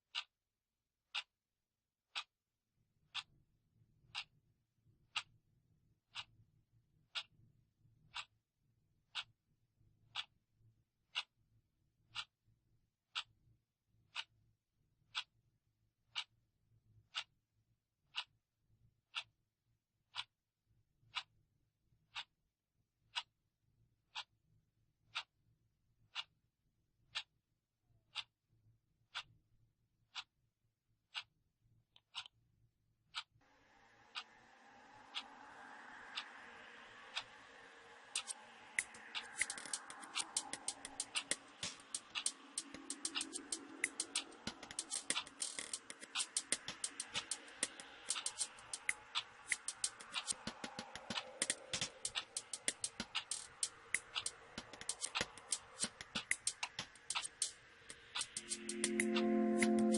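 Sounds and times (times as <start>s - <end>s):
clock ticking: 8.1s - 8.3s, 10.1s - 10.3s, 11.1s - 11.3s, 12.1s - 12.3s, 16.1s - 16.3s, 20.1s - 20.3s, 22.1s - 22.3s, 25.1s - 25.3s, 26.1s - 26.3s, 28.1s - 28.3s, 30.1s - 30.3s, 32.0s - 32.3s, 34.0s - 59.9s.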